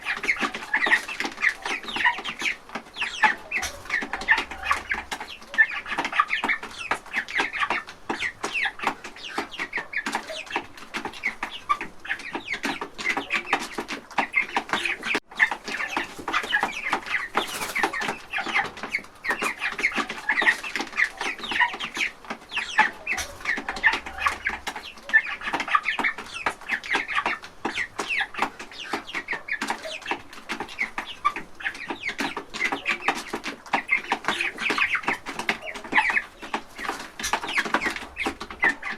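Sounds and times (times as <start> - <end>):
chickens clucking: 0.0 - 38.9.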